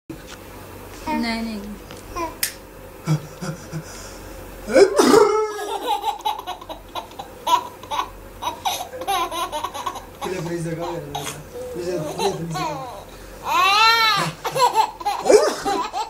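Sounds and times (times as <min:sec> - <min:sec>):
person laughing hard: 0:03.0 - 0:04.0, 0:04.7 - 0:06.7, 0:08.5 - 0:13.0, 0:14.0 - 0:16.0.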